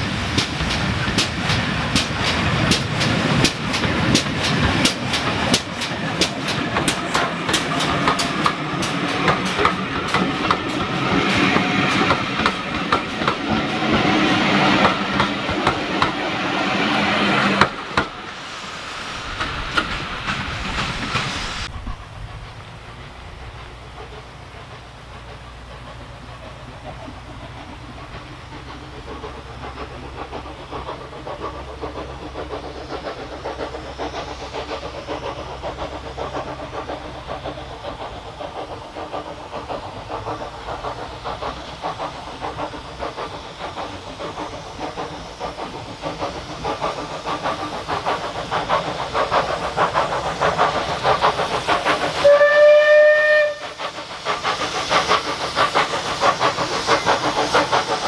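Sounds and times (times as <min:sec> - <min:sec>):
steam locomotive chuffing: 0:00.0 - 0:58.0
steam whistle blast: 0:52.2 - 0:53.8.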